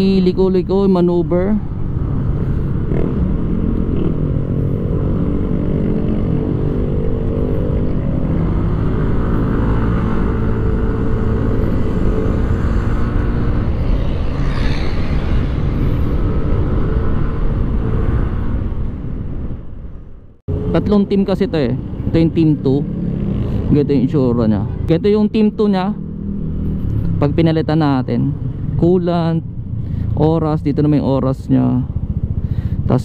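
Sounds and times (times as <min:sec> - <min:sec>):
wind noise on microphone: 0:01.8 - 0:20.6.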